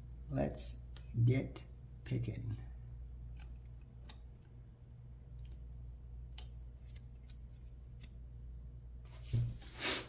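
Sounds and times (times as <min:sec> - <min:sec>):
steady low hum: 0:00.0 - 0:09.8
lock picks clicking: 0:05.3 - 0:08.2.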